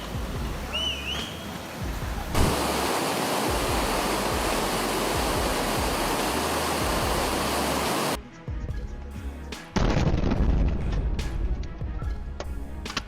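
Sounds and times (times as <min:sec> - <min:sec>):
fast-moving water rushing: 0:00.0 - 0:08.2.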